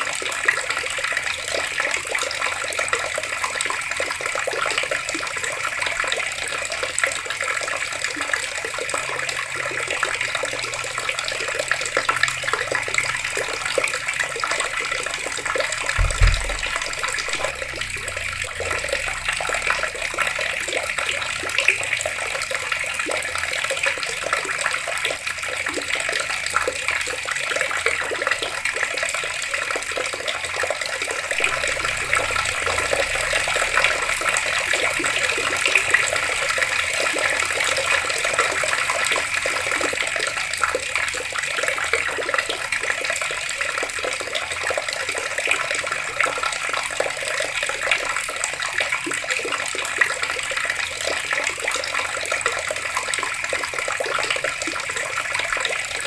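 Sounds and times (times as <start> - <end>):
water taps running: 8.8 - 44.0
low thump: 16.0 - 19.8, 31.4 - 34.2.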